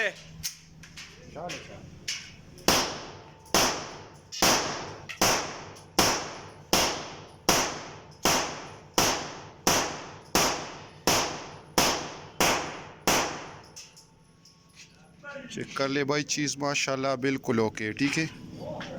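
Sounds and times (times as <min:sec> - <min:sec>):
pistol shots with echo: 0:02.7 - 0:13.8.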